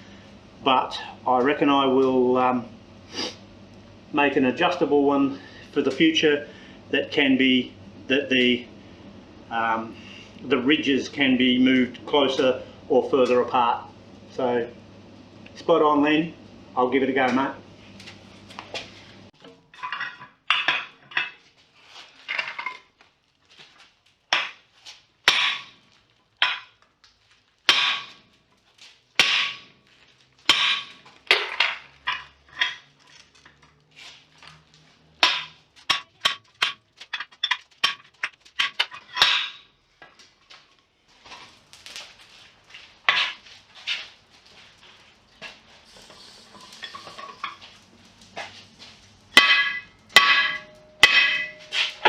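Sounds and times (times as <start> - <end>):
metal tools clanking on anvil: 19.4 - 21.4, 22.3 - 22.8, 30.5 - 33.7, 35.2 - 39.7, 46.5 - 47.7, 49.4 - 52.0.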